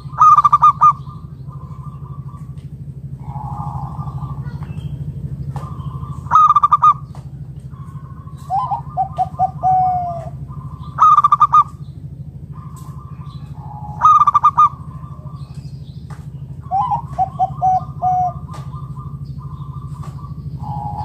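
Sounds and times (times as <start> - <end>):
dove cooing: 0.0 - 21.0
low hum: 0.0 - 21.0.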